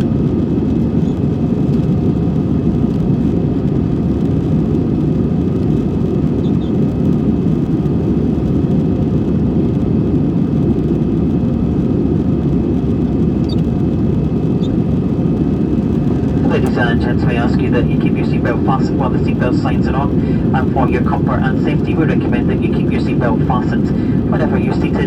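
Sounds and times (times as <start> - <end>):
airliner cabin engine drone: 0.0 - 25.0
faint steady whine: 11.8 - 25.0.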